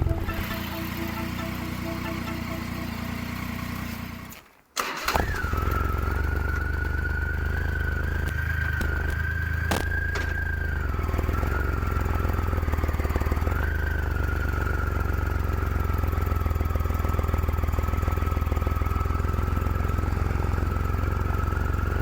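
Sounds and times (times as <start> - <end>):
steady high whine: 0.0 - 4.0
motorcycle engine running: 0.0 - 4.3, 5.2 - 22.0.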